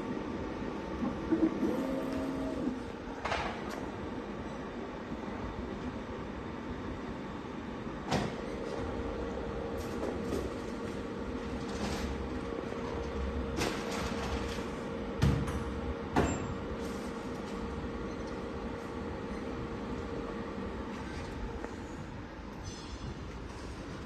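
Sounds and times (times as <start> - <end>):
machine hum with whine: 0.0 - 24.0.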